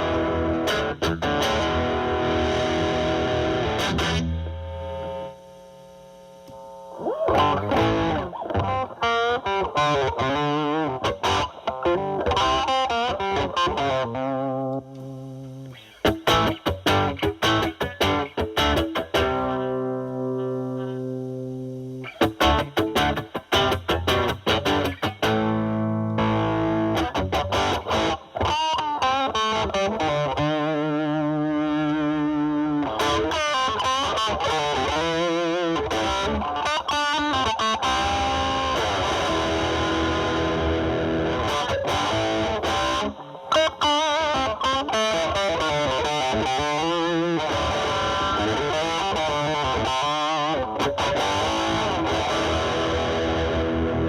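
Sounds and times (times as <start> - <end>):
distorted electric guitar lead: 0.0 - 54.0.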